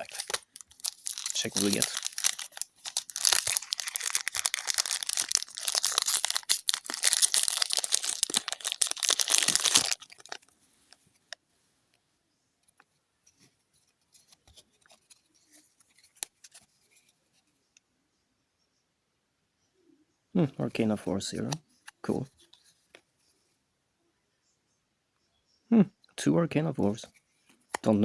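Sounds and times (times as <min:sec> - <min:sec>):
foil wrapper tearing and crinkling: 0:00.0 - 0:10.5.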